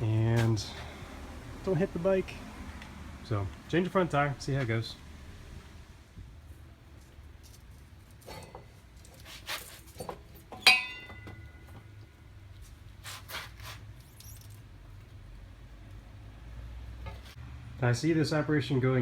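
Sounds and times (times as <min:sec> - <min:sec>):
metal tools clicking and knocking: 0:10.0 - 0:11.9
sharp ringing metal clink: 0:10.6 - 0:11.8.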